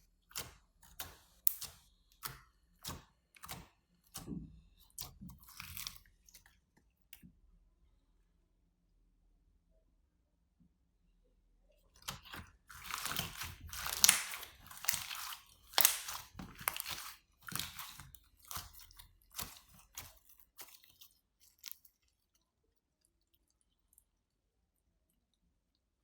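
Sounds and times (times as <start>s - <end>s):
slime squeezed by hand: 12.1s - 21.8s.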